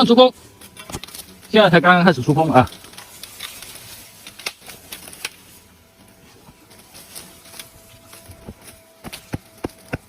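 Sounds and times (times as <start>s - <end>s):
wasps humming: 0.0s - 10.0s.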